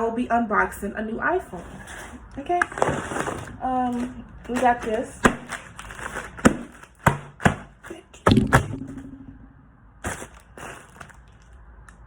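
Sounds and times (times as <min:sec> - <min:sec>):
sharp knocks on packaging box: 0:06.4 - 0:07.7.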